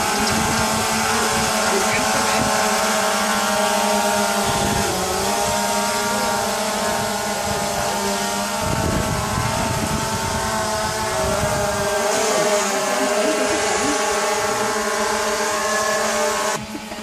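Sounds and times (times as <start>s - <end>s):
wind rumble on microphone: 0.0s - 2.9s, 4.2s - 12.1s
drone propellers buzzing: 0.0s - 17.0s.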